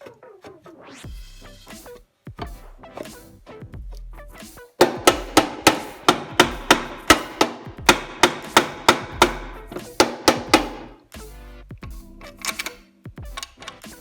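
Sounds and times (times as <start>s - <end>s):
hammer striking: 4.8s - 11.0s.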